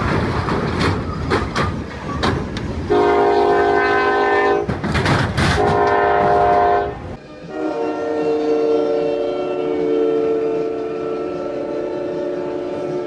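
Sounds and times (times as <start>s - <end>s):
train clattering past: 0.0s - 8.7s
locomotive horn blasts: 2.9s - 4.8s, 5.6s - 13.0s.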